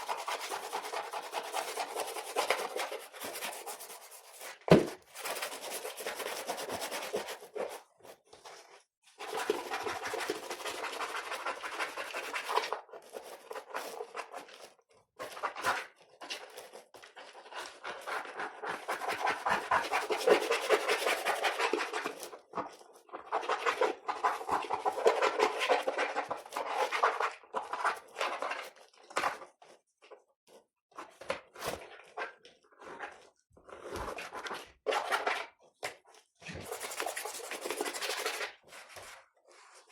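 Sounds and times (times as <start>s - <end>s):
scrubbing on a keyboard: 0.0s - 7.9s, 36.6s - 39.0s.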